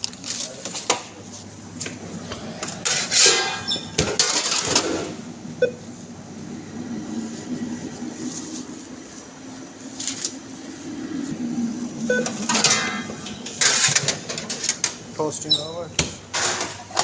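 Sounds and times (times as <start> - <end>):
oven low hum: 0.0 - 17.0
short beep: 12.1 - 12.4
metal handling clatter: 12.3 - 15.1.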